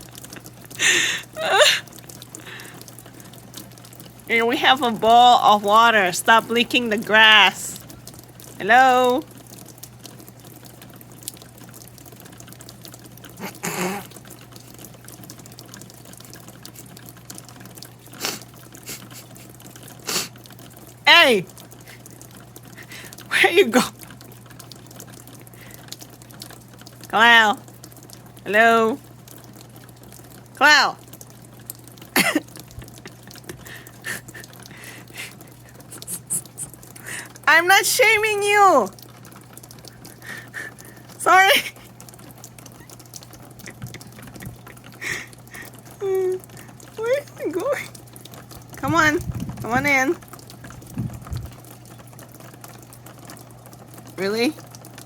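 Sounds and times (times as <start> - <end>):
rain falling: 0.0 - 55.0
water dripping: 0.0 - 55.0
person calling out: 0.8 - 1.8, 8.6 - 9.2, 13.4 - 14.1, 21.1 - 21.5, 22.8 - 24.0, 27.1 - 27.6, 28.5 - 29.0, 30.6 - 31.0, 33.6 - 38.9, 40.3 - 41.8, 45.1 - 47.9, 48.8 - 50.2.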